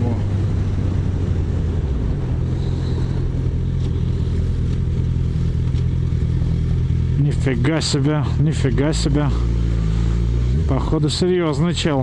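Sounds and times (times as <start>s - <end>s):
motorcycle engine running: 0.0s - 12.0s
wind rushing: 0.2s - 4.5s.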